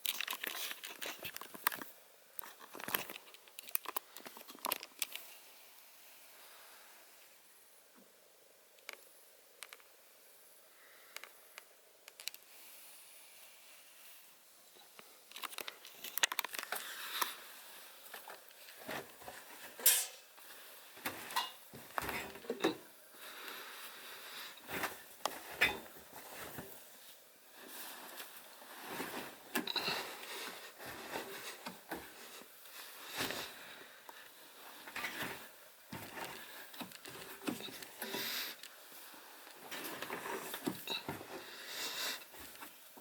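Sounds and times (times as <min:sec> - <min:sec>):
fabric rustling and crumpling: 0:23.2 - 0:43.0.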